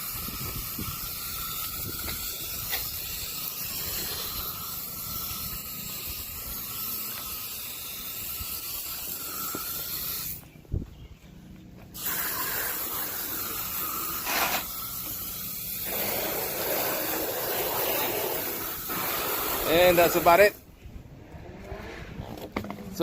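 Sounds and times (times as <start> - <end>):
water spraying from hose nozzle: 12.0 - 20.5.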